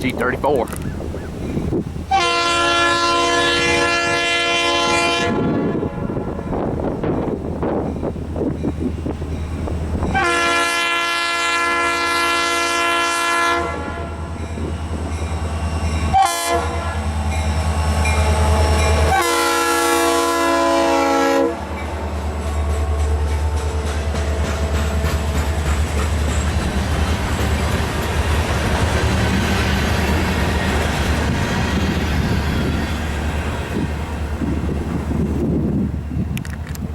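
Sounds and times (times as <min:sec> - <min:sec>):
diesel locomotive horn blasts: 0:02.1 - 0:06.9, 0:10.1 - 0:14.8, 0:15.6 - 0:25.8.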